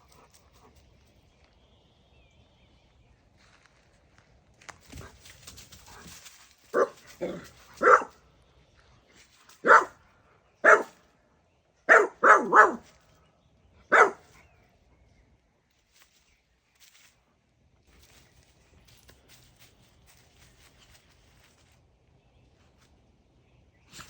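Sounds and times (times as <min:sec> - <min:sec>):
dog barking: 0:06.7 - 0:08.2, 0:09.6 - 0:10.0, 0:10.6 - 0:11.0, 0:11.9 - 0:12.9, 0:13.9 - 0:14.3.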